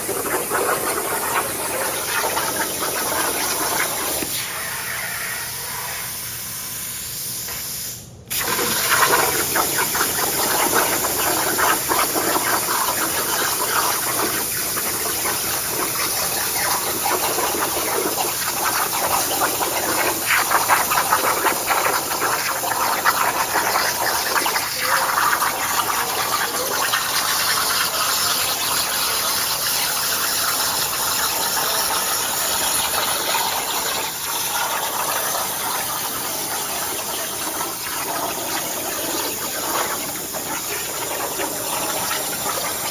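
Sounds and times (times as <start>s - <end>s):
plasma torch cutting steel: 0.0s - 42.9s.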